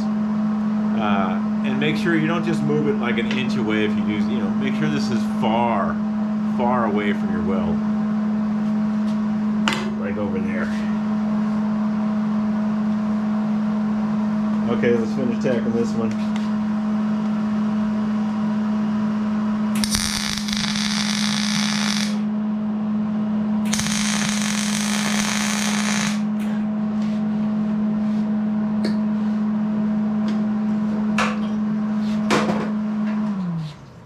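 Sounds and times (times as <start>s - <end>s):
steady hum: 0.0s - 34.0s
arc welding crackling and hissing: 19.8s - 22.3s, 23.7s - 26.3s.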